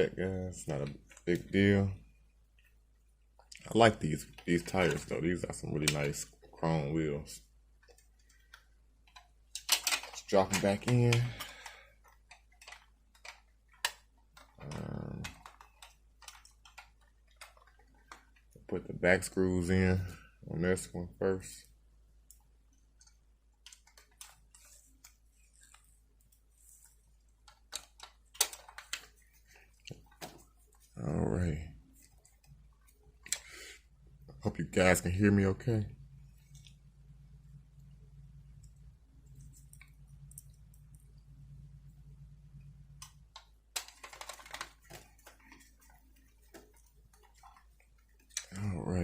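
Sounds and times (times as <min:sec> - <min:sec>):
low hum: 0:33.9 - 0:43.7.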